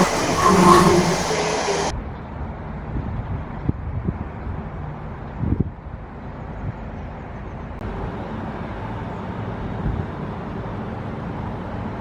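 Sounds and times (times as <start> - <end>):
low hum: 0.0 - 1.9
street vehicle noise: 0.0 - 1.9.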